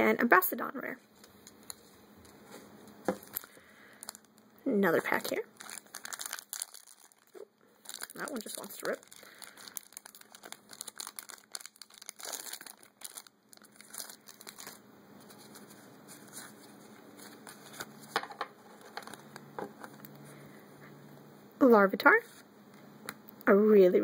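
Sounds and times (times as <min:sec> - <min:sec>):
foil wrapper crinkling and tearing: 0:03.1 - 0:04.4, 0:05.0 - 0:19.5.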